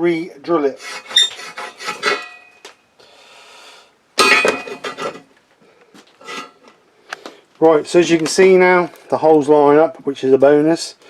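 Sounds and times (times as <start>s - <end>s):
steel parts clanking and scraping: 0.8s - 2.7s, 4.2s - 5.3s, 6.2s - 6.7s.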